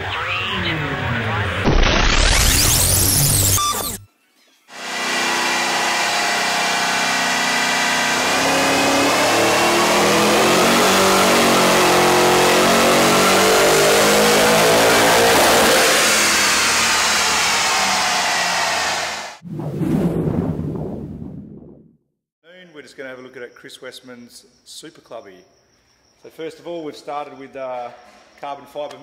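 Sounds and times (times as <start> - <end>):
engine revving at full throttle: 4.7 - 19.4.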